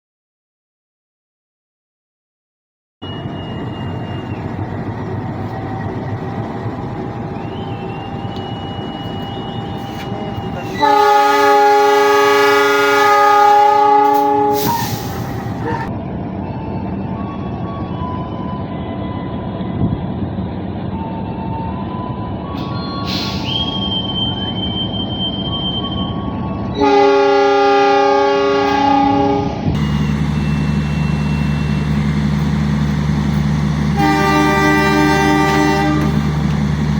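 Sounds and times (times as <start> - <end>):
locomotive rumble: 3.0 - 16.0, 29.4 - 36.9
diesel locomotive horn blast: 8.4 - 15.9, 26.7 - 36.9.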